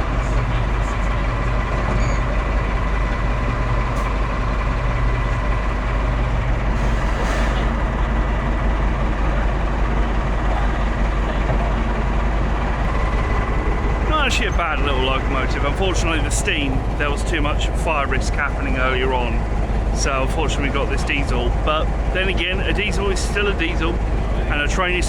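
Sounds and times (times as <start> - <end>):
locomotive engine throbbing: 0.0 - 25.0.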